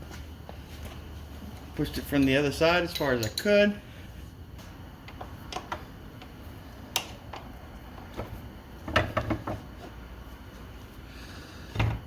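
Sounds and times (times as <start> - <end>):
metal axle clinking and clanking: 1.8 - 3.8.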